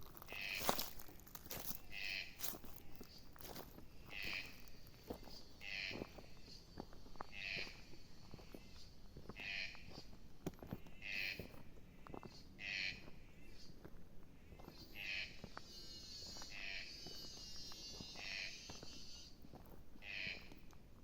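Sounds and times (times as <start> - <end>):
faint knocks and crunches: 0.0 - 3.8
animal high call: 14.9 - 19.4
high steady buzz: 15.2 - 19.5.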